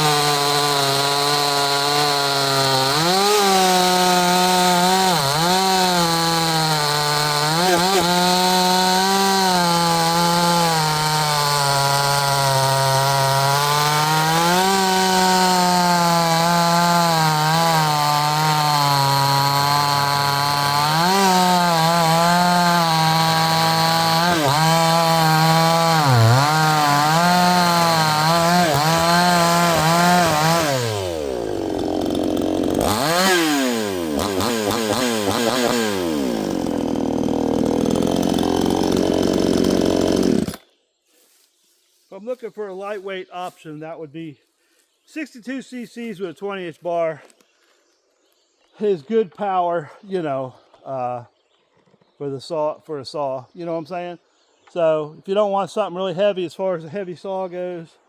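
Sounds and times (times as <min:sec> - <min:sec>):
chainsaw cutting wood: 0:00.0 - 0:41.5.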